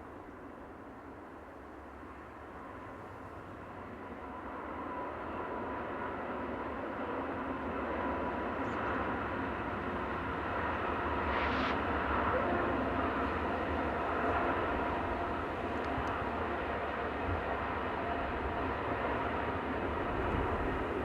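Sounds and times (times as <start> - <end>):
diesel locomotives rumbling: 8.9 - 21.0.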